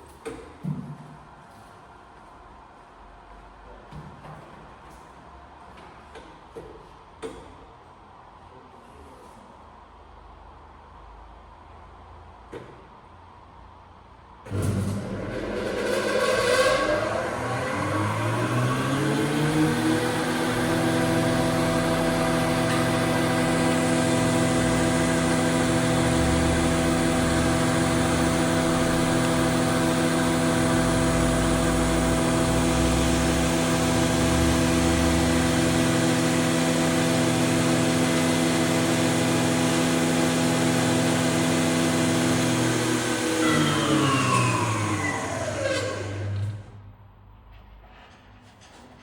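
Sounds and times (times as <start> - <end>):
surface planer humming and whining: 14.5 - 46.8.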